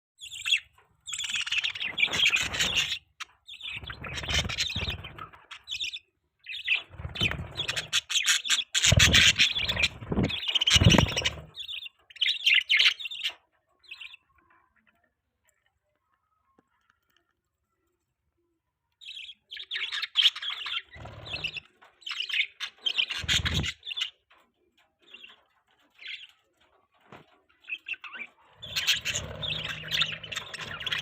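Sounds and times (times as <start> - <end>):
budgerigars chirping: 0.2 - 14.2, 19.0 - 24.2, 27.6 - 31.0.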